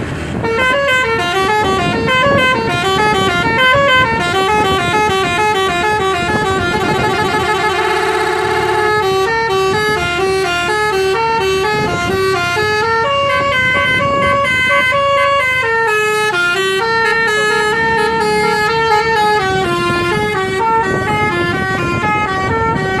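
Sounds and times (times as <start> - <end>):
multi-tone bus horn melody: 0.2 - 23.0.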